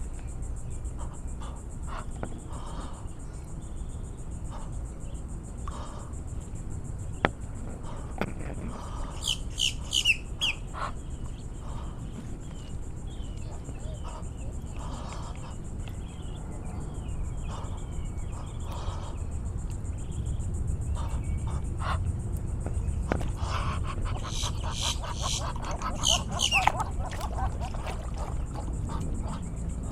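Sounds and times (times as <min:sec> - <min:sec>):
high insect drone: 0:00.0 - 0:29.9
low outdoor rumble: 0:00.0 - 0:29.9
bird chirping: 0:09.2 - 0:19.3, 0:24.0 - 0:29.4.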